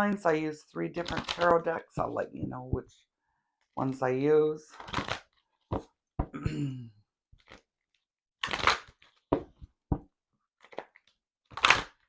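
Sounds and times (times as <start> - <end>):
cards being shuffled: 8.4 - 9.7, 10.6 - 12.0.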